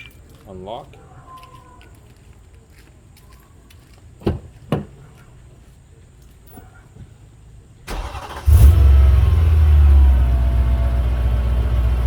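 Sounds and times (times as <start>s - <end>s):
car engine starting and idling: 7.9s - 12.0s.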